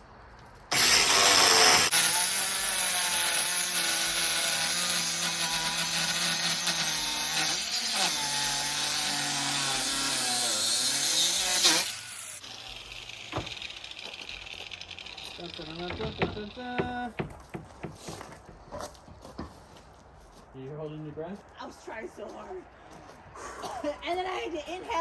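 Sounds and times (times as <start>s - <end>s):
angle grinder cutting board: 0.7s - 18.4s.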